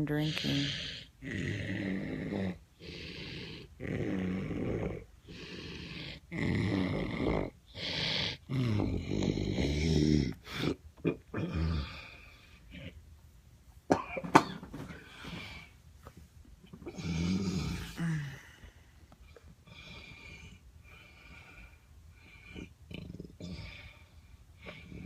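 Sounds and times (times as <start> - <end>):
man snoring: 0.3 - 10.8, 11.4 - 12.8, 16.9 - 18.4.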